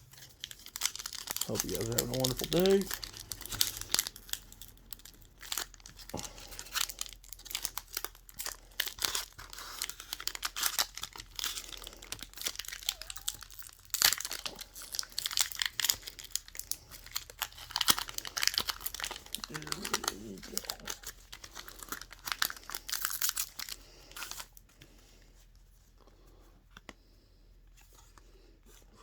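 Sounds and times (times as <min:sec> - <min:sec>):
foil wrapper crinkling and tearing: 0:00.0 - 0:24.6.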